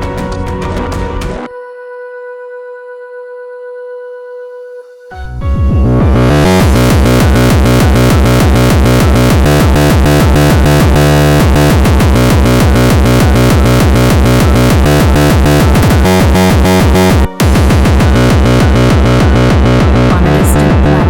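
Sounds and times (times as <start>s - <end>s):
distorted kick drum: 5.5s - 21.0s
layered synthesizer lines: 5.5s - 21.0s.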